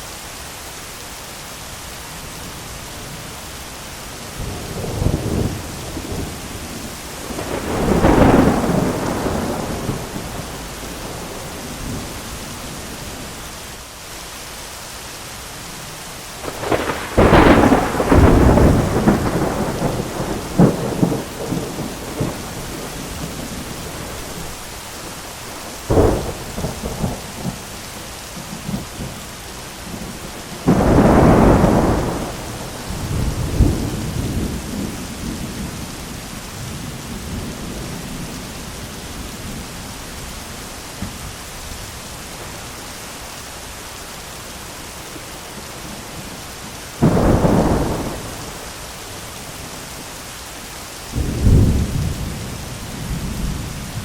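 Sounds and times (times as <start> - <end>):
steady rain: 0.0 - 54.0
thunder peals: 7.3 - 11.4, 16.4 - 24.1.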